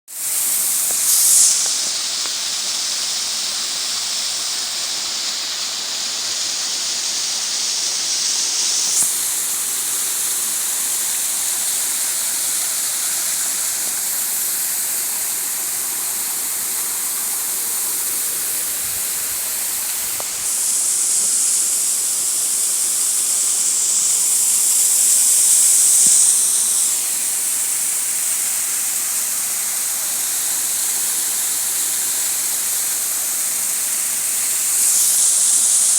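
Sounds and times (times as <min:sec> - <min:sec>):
waterfall pouring: 0:00.1 - 0:25.6.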